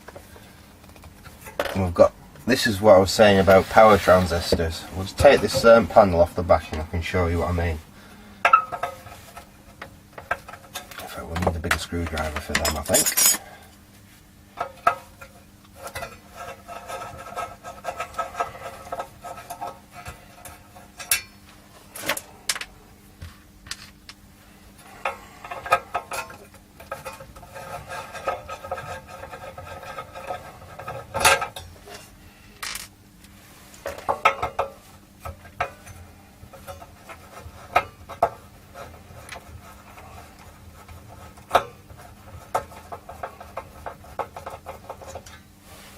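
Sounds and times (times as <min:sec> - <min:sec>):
metal-on-metal scraping: 0:01.3 - 0:07.8, 0:08.4 - 0:13.6, 0:14.5 - 0:22.7, 0:24.8 - 0:32.9, 0:33.5 - 0:45.9
tools and screws clinking: 0:12.0 - 0:13.5, 0:20.5 - 0:22.7.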